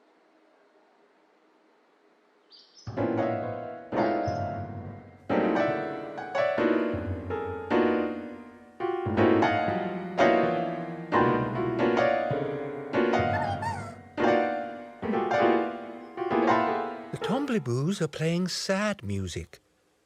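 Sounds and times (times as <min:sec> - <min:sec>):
slow sad piano chords: 0:02.9 - 0:17.9.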